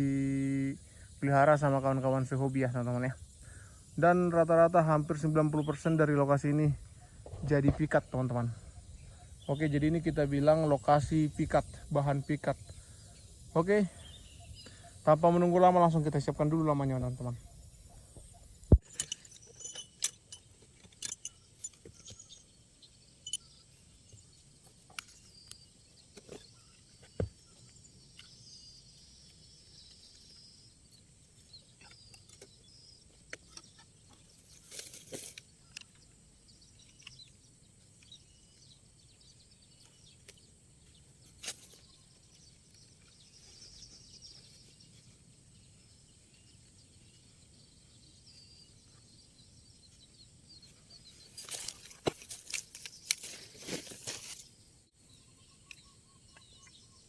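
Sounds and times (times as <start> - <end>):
faint small birds chirping: 0.0 - 57.0
trapping gear clicking and clinking: 18.8 - 23.6, 51.3 - 54.5
rustle: 18.8 - 55.8.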